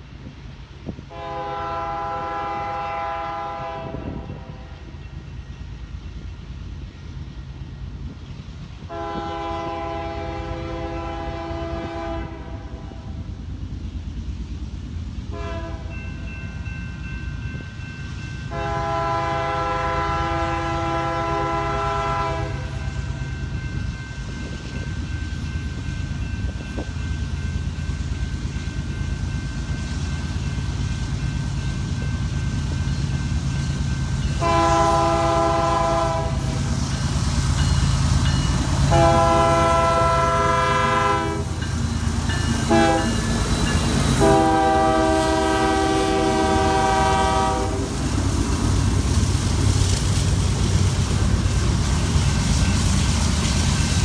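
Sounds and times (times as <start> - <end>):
diesel freight train rumble: 0.0 - 54.0
train air horn blasts: 1.1 - 4.7, 8.9 - 13.2, 15.3 - 16.0, 18.5 - 23.2, 34.3 - 36.8, 38.6 - 48.1.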